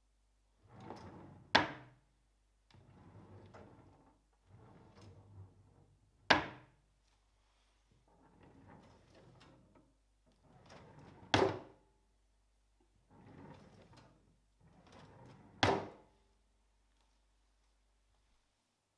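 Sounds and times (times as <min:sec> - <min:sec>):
drawer sliding: 0:00.6 - 0:02.0, 0:02.7 - 0:06.3, 0:08.0 - 0:11.8, 0:13.1 - 0:16.0.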